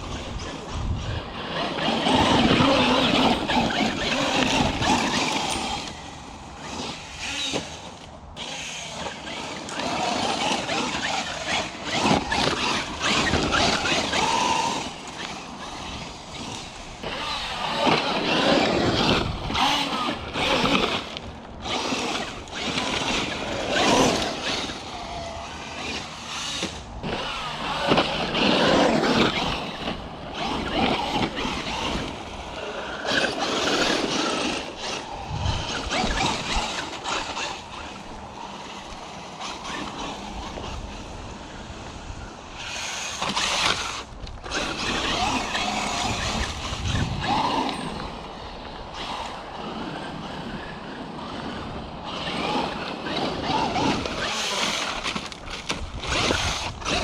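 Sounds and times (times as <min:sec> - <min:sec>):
rc truck electric motor: 0:00.0 - 0:57.0.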